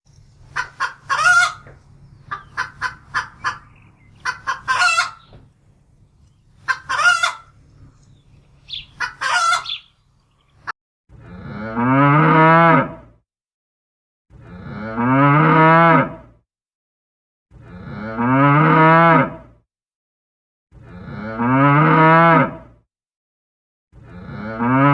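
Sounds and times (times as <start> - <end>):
chicken clucks and squawks: 0.4 - 5.5, 6.2 - 10.0
cow mooing: 11.2 - 13.1, 14.5 - 16.2, 17.6 - 19.4, 20.8 - 22.6, 24.0 - 24.9.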